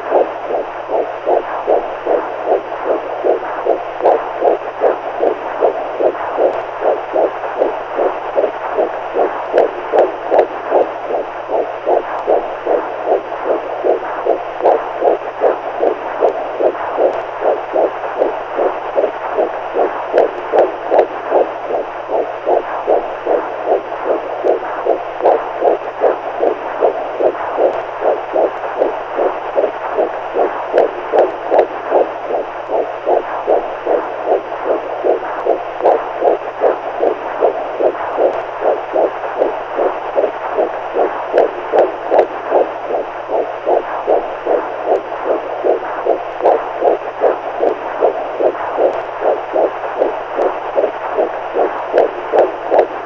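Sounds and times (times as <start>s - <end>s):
faint low hum: 0.0s - 53.0s
heartbeat: 0.0s - 53.0s.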